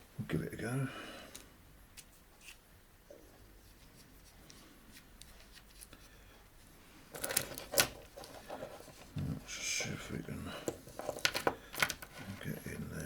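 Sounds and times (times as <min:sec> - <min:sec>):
screwdriver scraping watch case: 0:07.2 - 0:09.2, 0:10.6 - 0:12.5.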